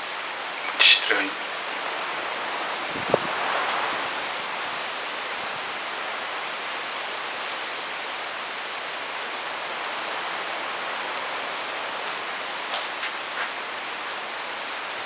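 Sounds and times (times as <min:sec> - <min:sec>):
steady hiss: 0:00.0 - 0:15.0.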